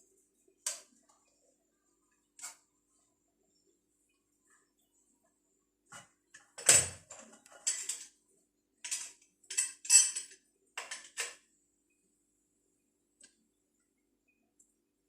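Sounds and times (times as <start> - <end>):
pipe parts knocking and scraping: 8.8 - 11.4.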